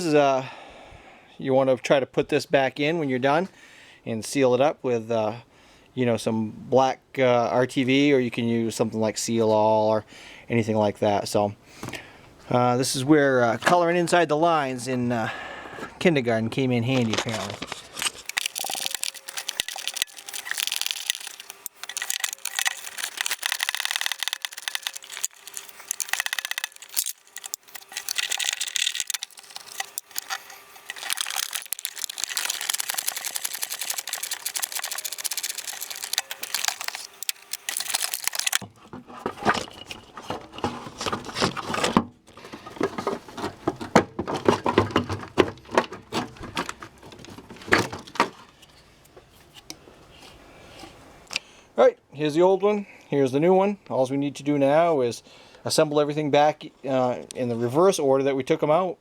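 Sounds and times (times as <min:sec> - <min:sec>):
scraping on plastic: 0:17.0 - 0:48.5
parts knocking and clattering: 0:17.0 - 0:49.2.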